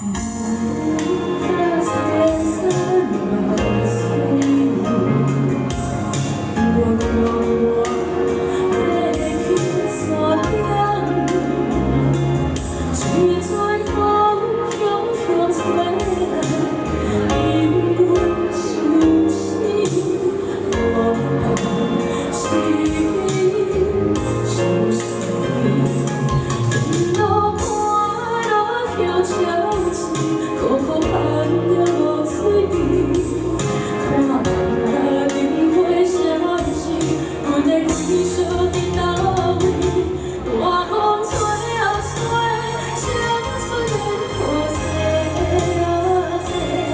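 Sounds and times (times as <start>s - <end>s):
instrumental accompaniment: 0.0s - 46.9s
person singing: 0.0s - 46.9s
pop ballad backing track: 0.0s - 46.9s
steady drum beat: 2.3s - 14.0s, 19.9s - 28.0s.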